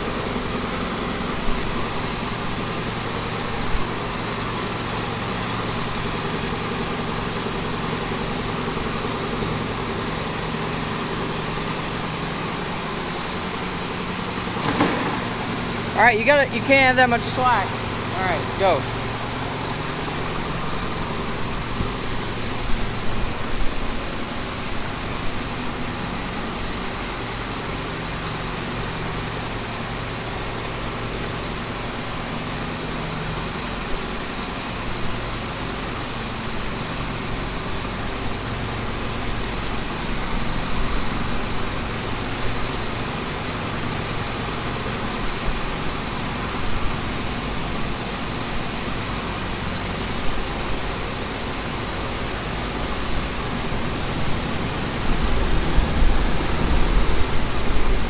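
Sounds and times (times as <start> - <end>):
vehicle engine running under load: 0.0 - 58.0.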